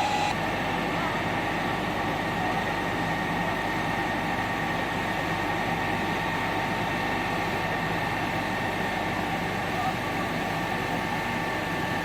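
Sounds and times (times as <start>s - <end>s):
engine humming: 0.0s - 0.4s.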